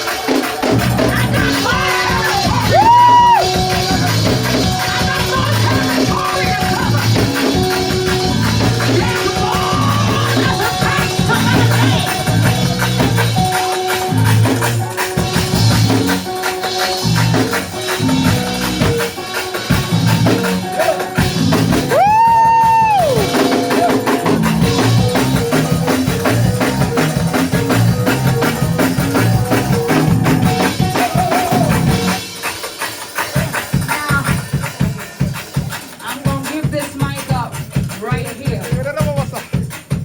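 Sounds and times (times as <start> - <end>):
church praise music: 0.0 - 40.0
tambourine shaking: 30.6 - 40.0.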